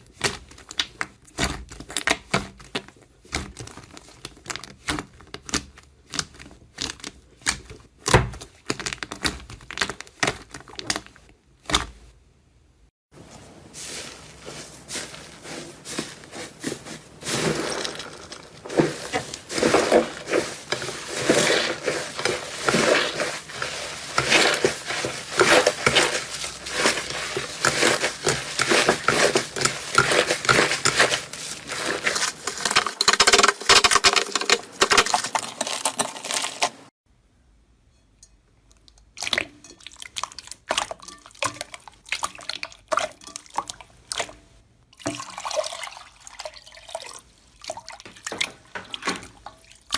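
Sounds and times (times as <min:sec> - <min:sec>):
slime squishing and crackling: 0:00.0 - 0:12.0, 0:13.4 - 0:36.9.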